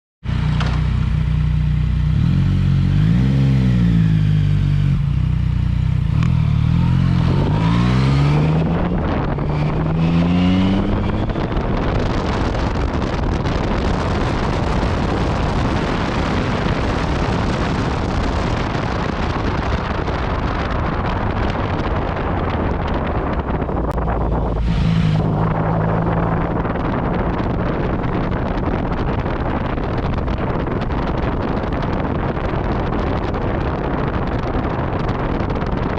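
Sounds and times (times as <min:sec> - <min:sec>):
motorcycle engine accelerating: 0:00.2 - 0:35.9
wind rushing over microphone: 0:00.3 - 0:35.9.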